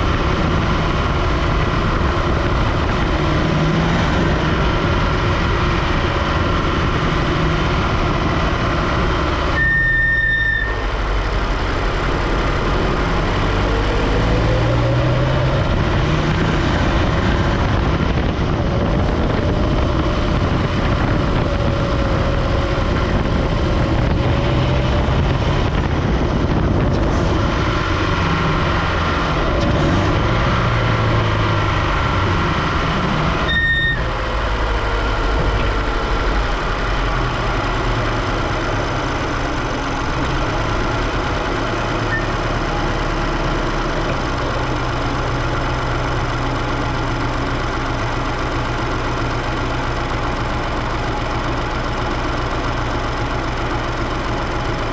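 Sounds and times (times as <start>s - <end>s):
car engine running: 0.0s - 9.7s, 10.7s - 54.9s
short beep: 9.6s - 10.8s, 33.5s - 34.1s, 42.1s - 42.4s.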